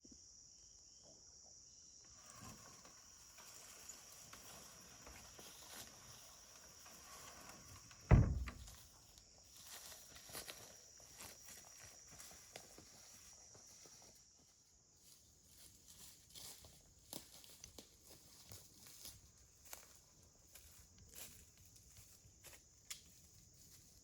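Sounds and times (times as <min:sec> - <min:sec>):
high insect buzz: 0:00.2 - 0:13.8
footsteps or rustling: 0:02.2 - 0:24.0
loud sudden thump: 0:08.1 - 0:08.7.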